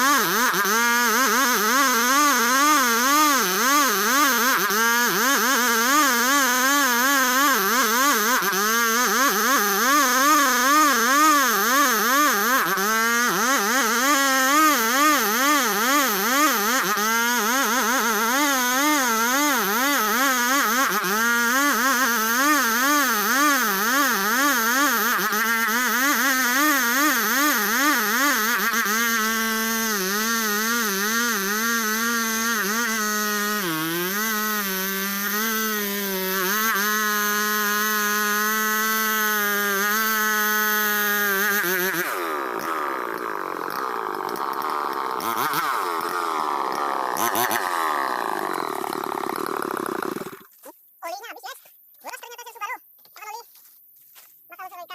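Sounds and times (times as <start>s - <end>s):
sawing machine engine cutting wood: 0.0s - 50.7s.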